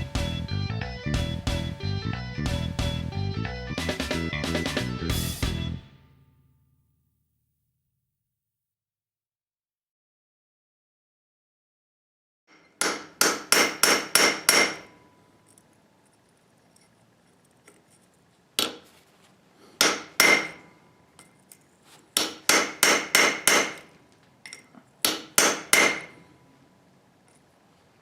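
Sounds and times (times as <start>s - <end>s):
hammer striking steel on anvil: 12.5s - 15.3s, 19.8s - 21.4s, 22.2s - 26.4s.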